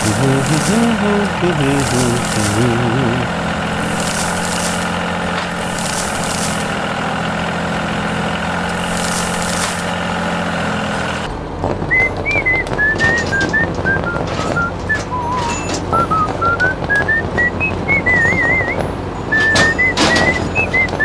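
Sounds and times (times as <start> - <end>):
heavy truck engine running: 0.0 - 21.0
cheerful whistled music tune: 11.8 - 21.0.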